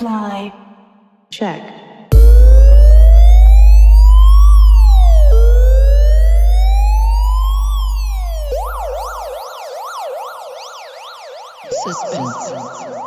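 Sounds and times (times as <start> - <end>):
deep bass tone: 2.1 - 9.4
electronic siren wailing and yelping: 2.1 - 13.0.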